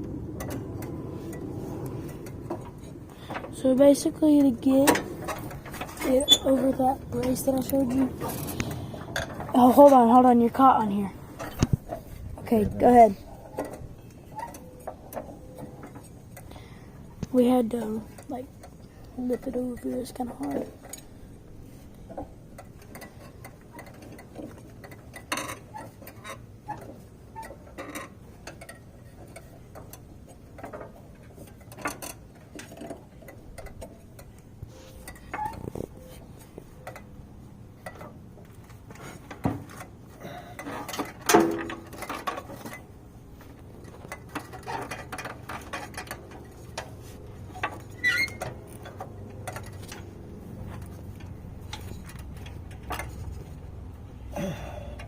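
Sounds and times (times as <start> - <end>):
clicks and metallic knocks: 0.0 - 10.2, 22.1 - 53.7.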